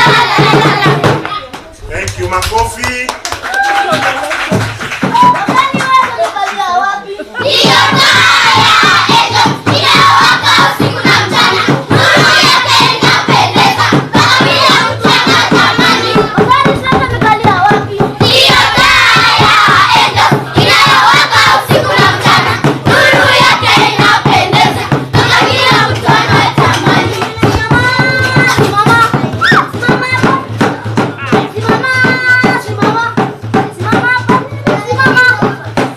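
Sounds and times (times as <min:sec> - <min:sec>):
children singing together: 0:00.0 - 0:01.3, 0:07.4 - 0:33.2
rhythmic hand-clapping: 0:00.0 - 0:35.9.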